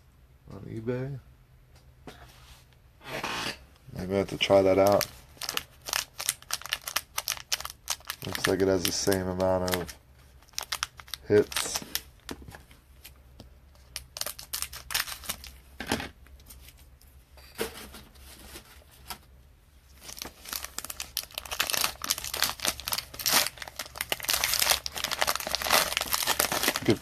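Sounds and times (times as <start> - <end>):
wrapper crinkling and tearing: 4.2 - 12.3, 13.8 - 15.6, 20.0 - 27.0.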